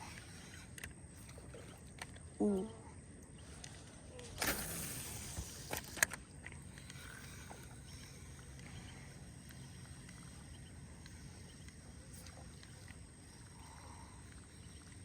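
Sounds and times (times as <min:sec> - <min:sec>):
small chirps: 0:00.0 - 0:15.0
faint ticks: 0:05.3 - 0:15.0.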